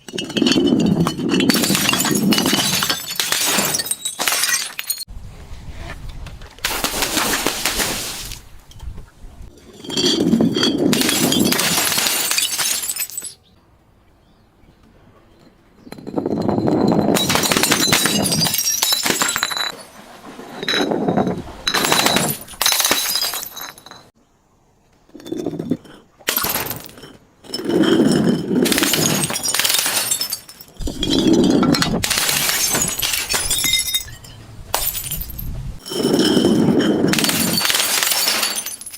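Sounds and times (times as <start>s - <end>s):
glass bottles shattering: 0.0s - 5.1s, 9.6s - 13.4s, 15.9s - 20.0s, 20.6s - 24.1s, 25.2s - 38.9s
glass shards clinking: 0.0s - 5.1s, 9.6s - 13.4s, 15.9s - 19.9s, 21.7s - 24.1s, 26.3s - 38.9s.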